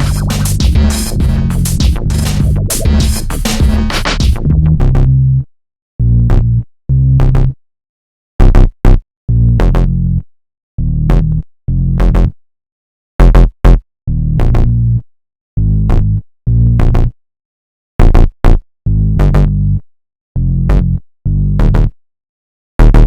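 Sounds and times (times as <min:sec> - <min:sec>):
electronic music with drum machine: 0:00.0 - 0:04.8.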